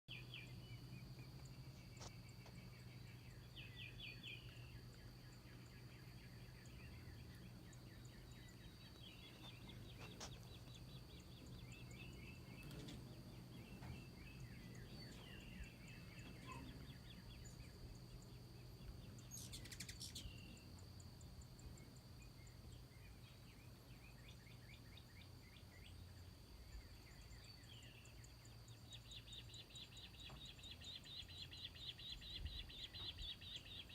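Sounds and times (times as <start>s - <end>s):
hummingbirds chattering: 0.2s - 33.9s
high insect-like whine: 1.7s - 23.6s.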